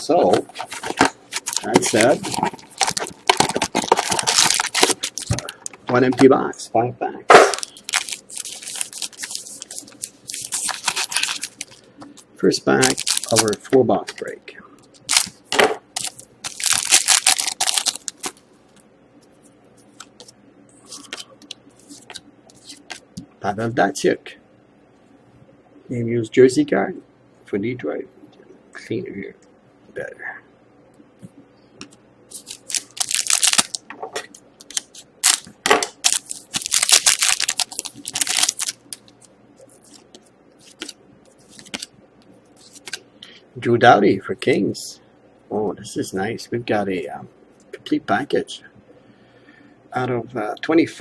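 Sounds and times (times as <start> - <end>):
wrapper tearing and crumpling: 1.4 - 5.5, 7.5 - 11.8, 12.8 - 13.6, 15.0 - 15.3, 16.0 - 18.4, 32.3 - 33.8, 34.6 - 39.2.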